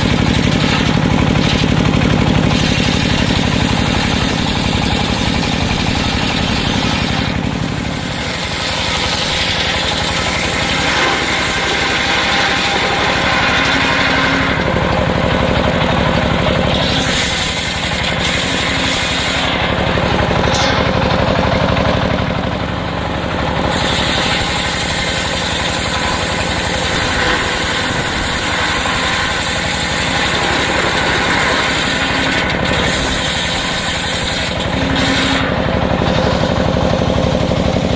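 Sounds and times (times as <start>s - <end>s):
sawmill machine drone: 0.0s - 37.9s
high hiss of timber sawing: 2.4s - 14.6s, 16.7s - 21.0s, 23.7s - 36.3s.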